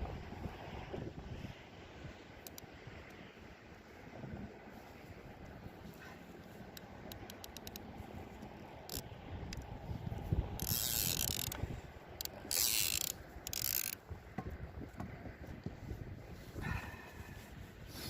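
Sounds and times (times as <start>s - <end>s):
fishing reel ratchet clicks: 6.8s - 7.9s, 8.8s - 14.0s.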